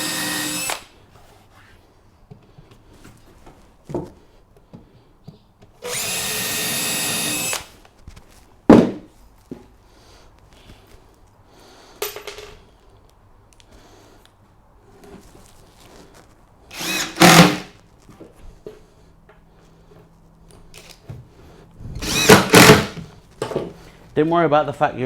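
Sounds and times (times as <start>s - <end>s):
power drill driving screws: 0.0s - 0.9s, 5.8s - 7.8s, 16.7s - 17.8s, 22.0s - 23.0s.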